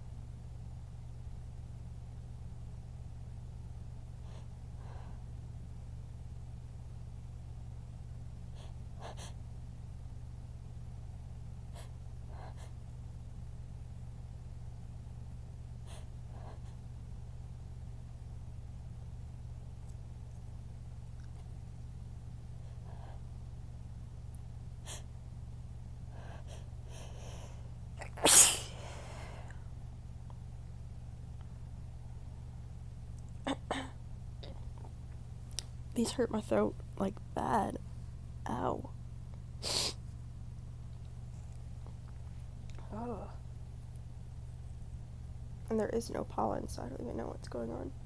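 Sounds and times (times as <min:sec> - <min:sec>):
steady low hum: 0:00.0 - 0:48.0
woman sneezing: 0:28.0 - 0:29.0
woman's sharp inhalations: 0:28.2 - 0:29.5, 0:39.6 - 0:40.0.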